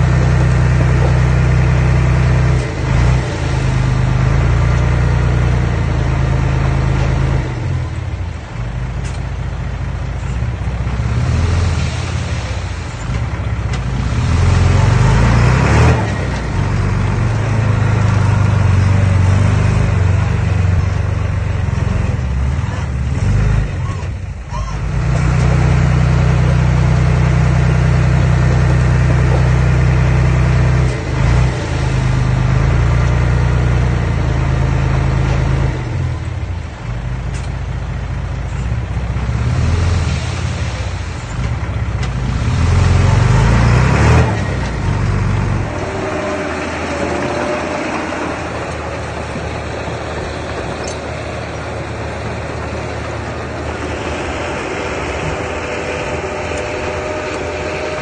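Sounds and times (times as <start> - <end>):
diesel engine of heavy machinery: 0.0 - 58.0.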